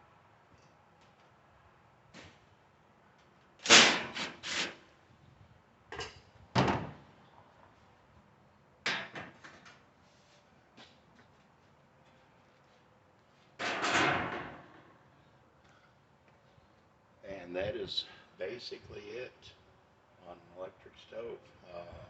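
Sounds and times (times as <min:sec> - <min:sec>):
sheet metal banging and rattling: 0:13.6 - 0:14.9.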